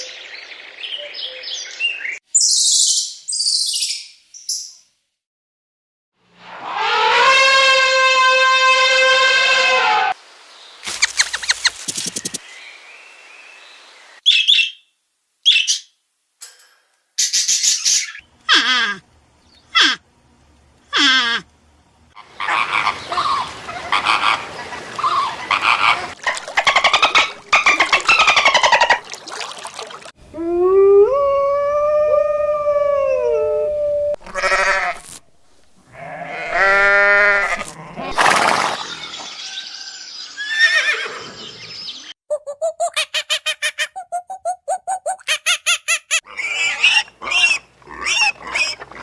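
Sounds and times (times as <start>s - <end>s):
rising and falling animal call: 6.5s - 10.2s, 22.2s - 35.0s, 35.9s - 41.4s
farm animal calls: 22.2s - 29.2s, 45.3s - 49.0s.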